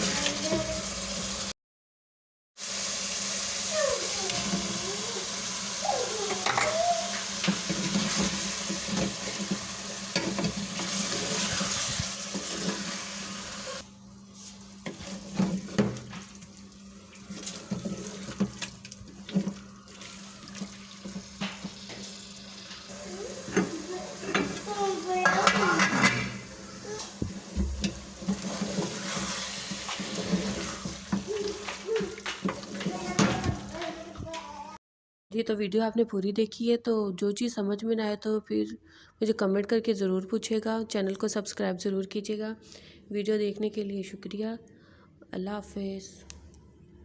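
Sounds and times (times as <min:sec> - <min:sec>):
utensils and dishes clinking: 0:06.2 - 0:12.9, 0:23.3 - 0:27.1.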